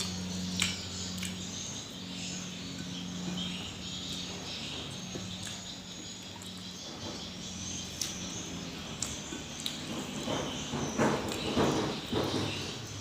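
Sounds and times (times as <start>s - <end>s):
soft chewing clicks: 0.0s - 1.6s, 7.9s - 10.0s.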